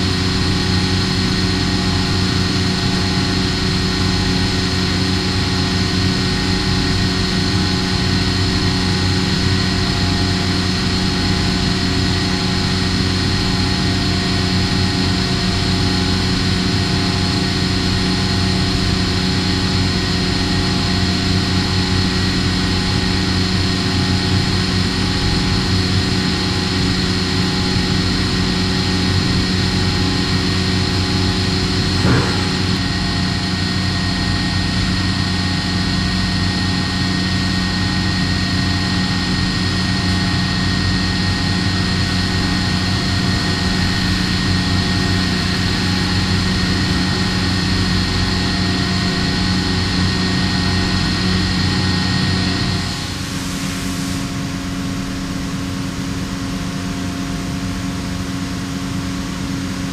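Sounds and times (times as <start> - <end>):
machine hum with fixed tones: 0.0 - 59.9
hiss: 53.1 - 54.6.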